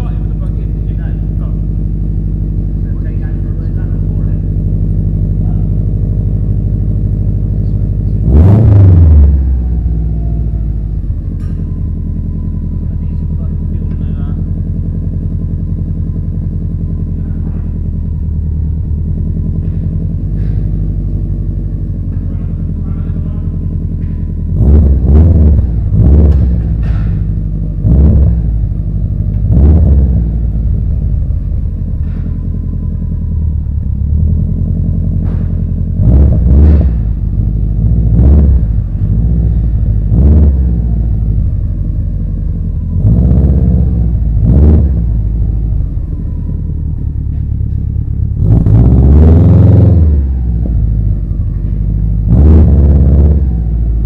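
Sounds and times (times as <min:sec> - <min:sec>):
car engine idling and revving: 0:00.0 - 0:54.0.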